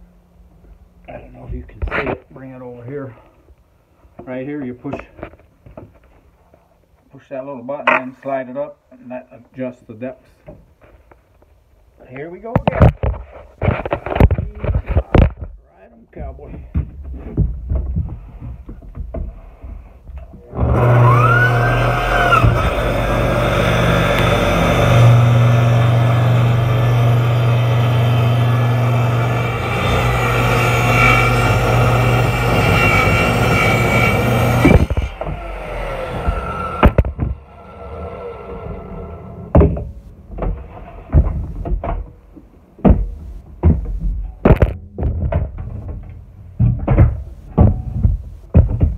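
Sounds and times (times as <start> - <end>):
knocks and clatter: 16.5 - 20.4, 39.5 - 48.9
table saw motor running: 20.6 - 39.5.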